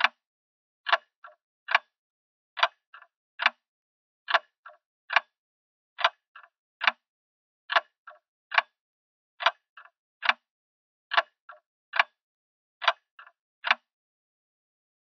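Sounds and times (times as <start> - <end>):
faint clock click: 4.3 - 5.3, 6.0 - 7.0, 7.7 - 8.8, 9.4 - 10.5, 11.1 - 12.2, 12.8 - 13.9.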